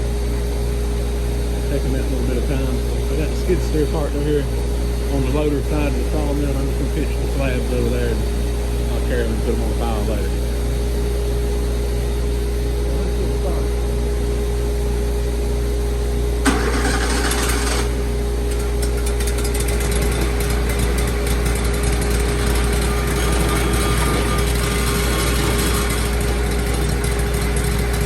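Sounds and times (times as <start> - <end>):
sawmill engine running: 0.0 - 28.0
noisy burst: 16.4 - 18.8.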